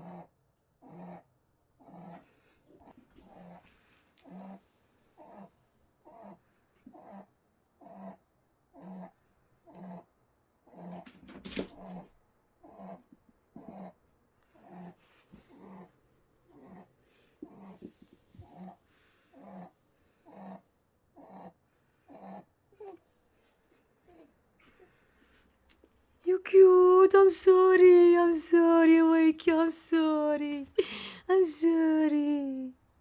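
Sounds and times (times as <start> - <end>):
pet snoring: 0.0 - 5.5, 6.1 - 10.1, 10.7 - 11.1, 12.6 - 14.0, 14.6 - 16.0, 16.6 - 23.1.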